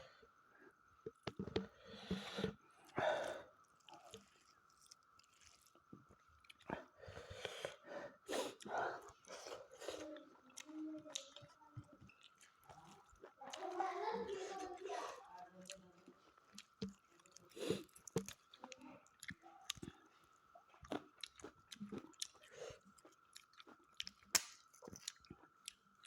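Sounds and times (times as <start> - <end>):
person chewing food: 1.0 - 26.0
wet mouth smacks: 24.0 - 25.1.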